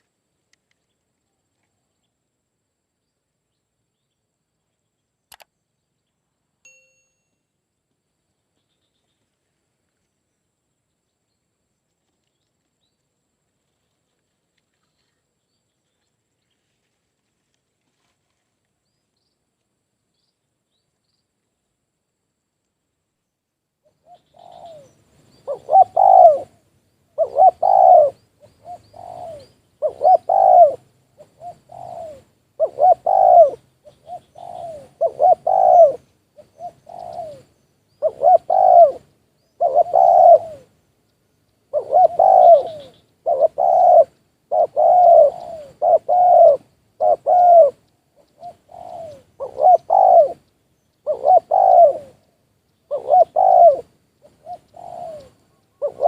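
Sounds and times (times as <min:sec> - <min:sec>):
doves cooing: 0:24.0 - 0:40.7, 0:41.7 - 0:56.0.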